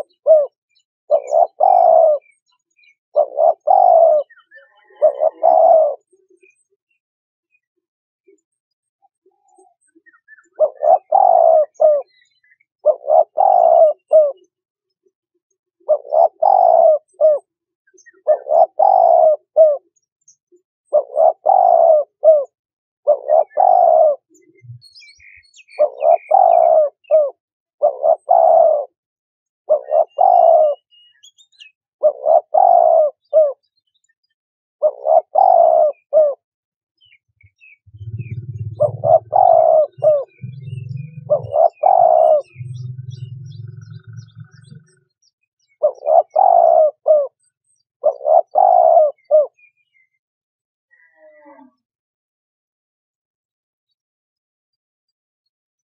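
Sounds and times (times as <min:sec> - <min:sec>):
dove cooing: 0:00.0 - 0:02.3, 0:03.1 - 0:06.5, 0:09.5 - 0:14.5, 0:15.8 - 0:19.9, 0:20.9 - 0:24.9, 0:25.7 - 0:29.0, 0:29.7 - 0:30.9, 0:31.6 - 0:33.6, 0:34.8 - 0:36.4, 0:37.4 - 0:49.6
small bird chirping: 0:00.0 - 0:07.0, 0:23.1 - 0:28.6, 0:37.0 - 0:50.2.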